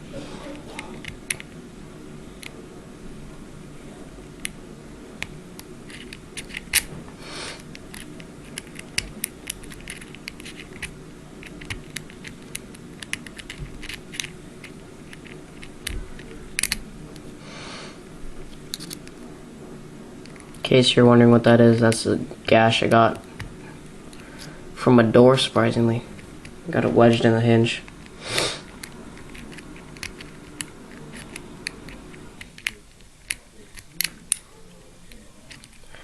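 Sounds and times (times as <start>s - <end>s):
lock pick scraping: 5.2s - 6.9s, 7.6s - 16.8s, 18.6s - 19.1s, 27.8s - 34.5s
lock pick clicking on pins: 7.6s - 16.8s, 27.8s - 34.4s.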